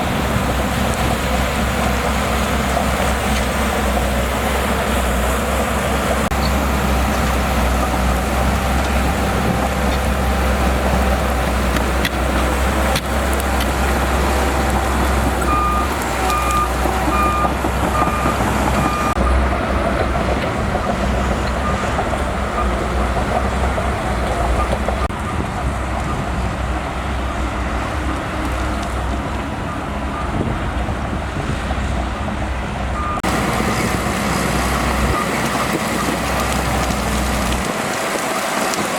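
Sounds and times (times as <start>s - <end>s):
bulldozer diesel engine rumbling: 0.0s - 38.9s
reversing alarm beeping: 15.4s - 19.6s, 33.0s - 33.9s, 34.8s - 36.6s.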